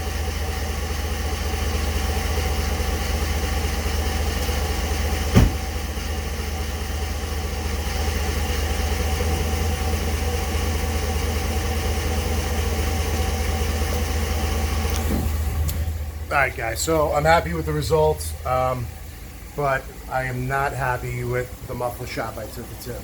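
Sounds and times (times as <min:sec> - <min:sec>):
pickup engine idling: 0:00.0 - 0:23.0
short thump: 0:05.3 - 0:05.8, 0:15.0 - 0:15.4.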